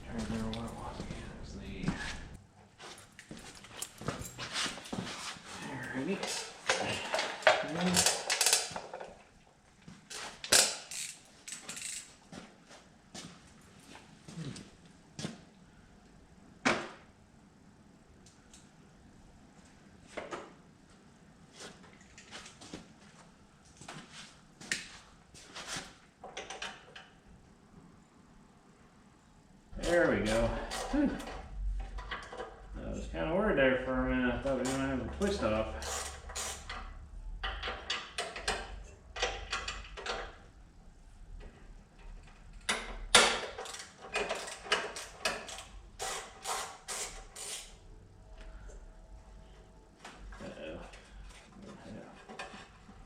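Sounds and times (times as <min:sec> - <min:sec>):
metallic clicks and rattles of tools: 0:06.2 - 0:09.2, 0:10.4 - 0:12.1, 0:42.0 - 0:47.7
wrench metallic scrapes and clicks: 0:10.5 - 0:12.1, 0:35.8 - 0:36.9, 0:43.6 - 0:47.8.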